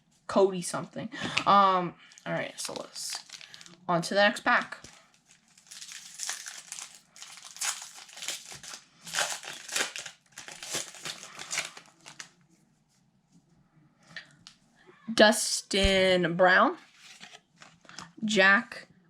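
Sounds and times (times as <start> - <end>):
plastic wrapper crinkling: 2.1 - 3.9, 4.7 - 12.4.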